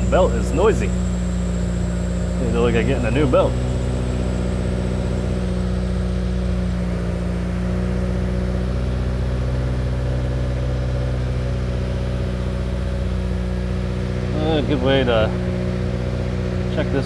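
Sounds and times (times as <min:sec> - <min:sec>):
faint high whine: 0:00.0 - 0:07.0
car engine idling: 0:00.0 - 0:17.0
noisy accessory belt: 0:00.0 - 0:17.0.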